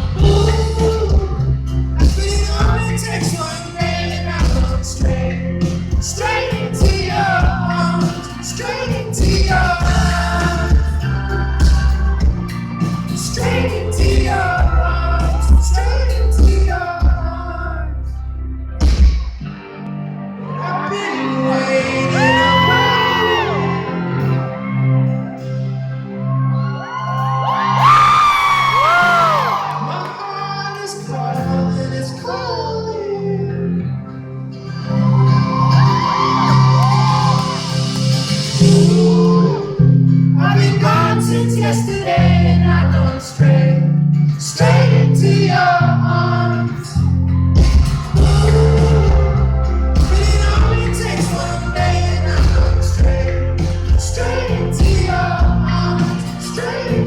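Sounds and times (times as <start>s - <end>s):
voices singing and whooping: 0.0s - 17.6s, 20.4s - 25.1s, 26.3s - 33.1s, 34.8s - 43.8s, 44.4s - 57.0s
heavy bass line: 0.0s - 20.4s, 35.0s - 57.0s
lead vocal: 0.0s - 57.0s
live pop-folk band: 0.0s - 57.0s.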